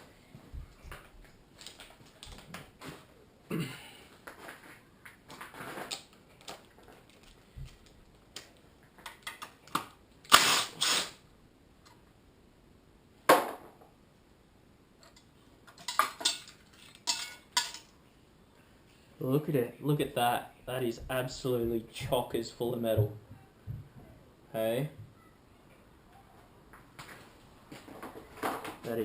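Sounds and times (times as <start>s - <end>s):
metal engine parts clinking: 15.8s - 17.9s.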